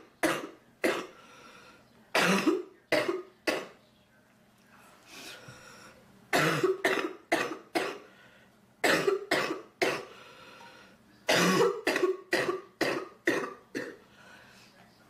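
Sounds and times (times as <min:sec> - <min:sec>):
girl coughing: 0:02.2 - 0:03.8, 0:06.4 - 0:08.0, 0:08.8 - 0:10.1, 0:11.3 - 0:14.0.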